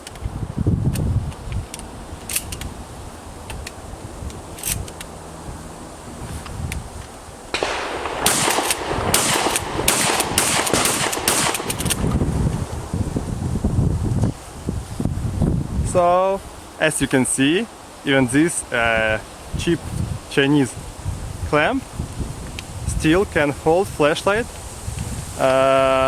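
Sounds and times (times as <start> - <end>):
sharp clicks: 7.5 - 12.2
shotgun shots: 7.5 - 12.2.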